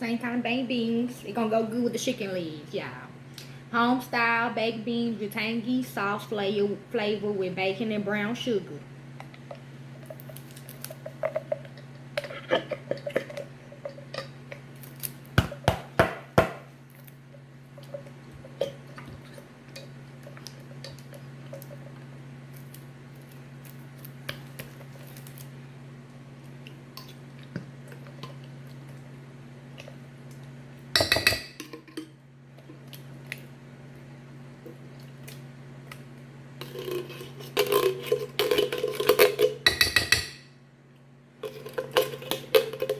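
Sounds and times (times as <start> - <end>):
steady low hum: 0.0 - 42.9
dishes and pots clattering: 31.0 - 32.1, 37.6 - 40.4.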